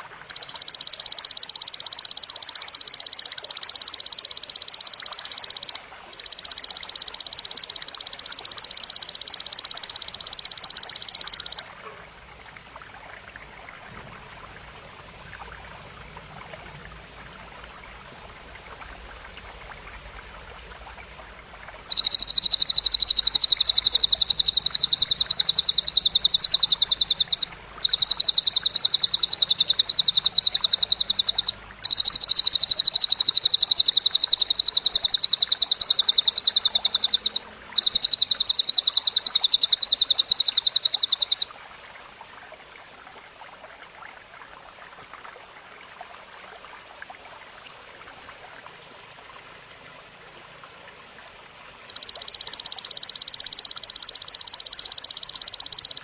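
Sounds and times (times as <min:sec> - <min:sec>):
insect buzzing trills: 0:21.9 - 0:41.4
lower insect buzz: 0:21.9 - 0:41.4.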